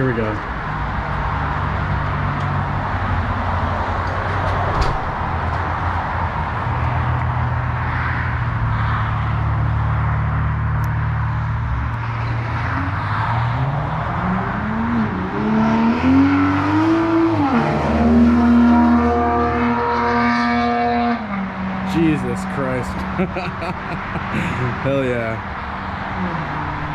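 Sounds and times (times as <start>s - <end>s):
car exhaust drone and revving: 5.0s - 23.2s.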